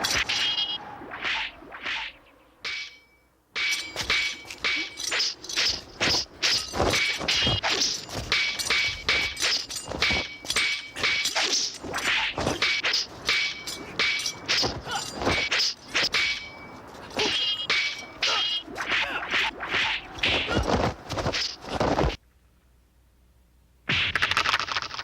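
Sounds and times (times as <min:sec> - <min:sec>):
weapons swishing: 0:00.0 - 0:03.0, 0:03.6 - 0:22.2
hits with metallic ring: 0:02.6 - 0:11.7, 0:12.6 - 0:18.4.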